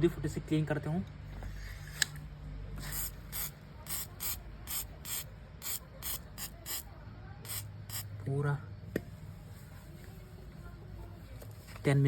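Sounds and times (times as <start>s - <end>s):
aerosol can spraying: 2.8s - 8.1s.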